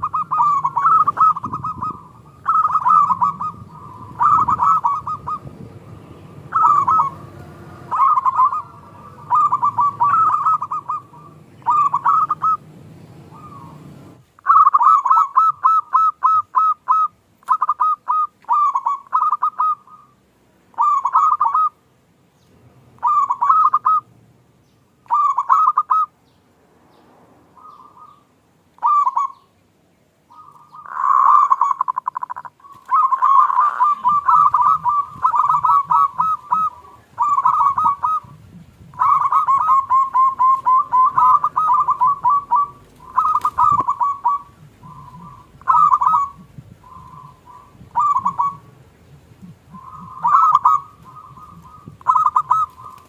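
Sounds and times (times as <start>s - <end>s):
low background rumble: 0.0s - 14.3s
doves cooing: 0.0s - 21.8s, 22.9s - 24.1s, 25.0s - 26.2s, 27.6s - 29.5s, 30.3s - 53.0s.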